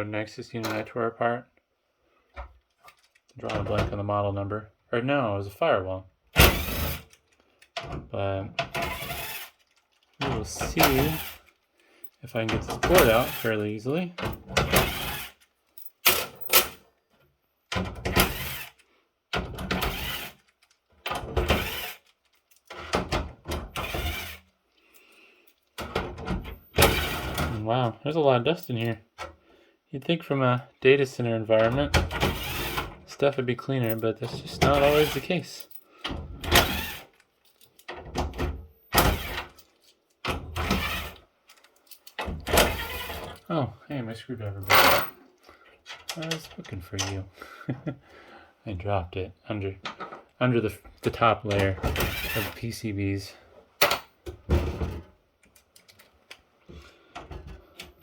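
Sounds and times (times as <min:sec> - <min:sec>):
parts rubbing and knocking: 0:08.6 - 0:11.6, 0:12.3 - 0:16.8, 0:19.5 - 0:24.5, 0:25.8 - 0:27.7, 0:31.6 - 0:43.5, 0:44.5 - 0:45.3, 0:49.9 - 0:52.9.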